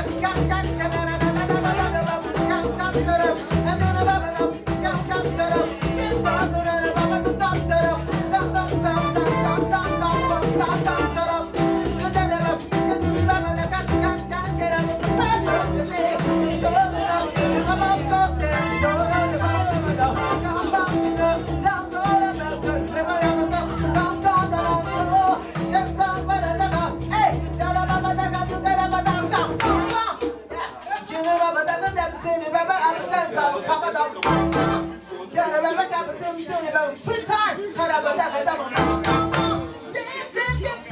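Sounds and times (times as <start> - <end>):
person singing: 0.0 - 30.1, 38.6 - 40.9
live band playing latin tune: 0.0 - 31.6, 34.2 - 35.2, 36.2 - 40.9.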